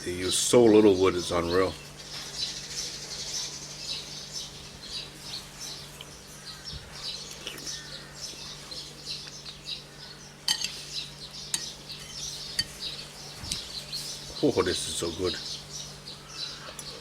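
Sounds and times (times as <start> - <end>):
small birds chirping: 0.0 - 17.0
spoon clinking against a bowl: 10.5 - 10.8, 11.5 - 12.9.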